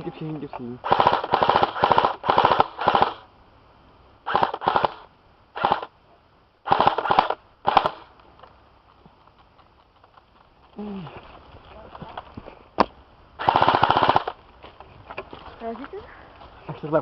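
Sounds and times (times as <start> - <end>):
airsoft gun bursts rattling: 0.8 - 3.2, 4.3 - 5.9, 6.6 - 8.1, 13.4 - 14.4.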